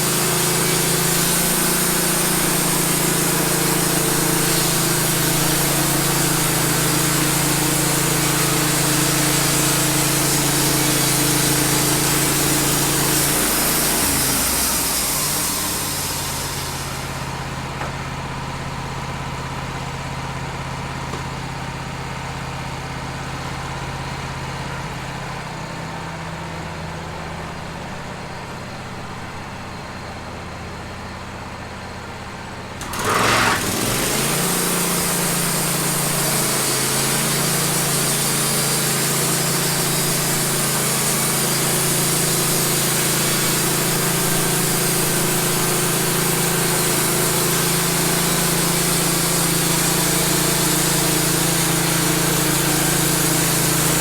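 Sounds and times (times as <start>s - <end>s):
engine running and revving: 0.0s - 16.8s, 32.8s - 54.0s
bandsaw cutting hiss: 0.0s - 17.7s, 32.8s - 54.0s.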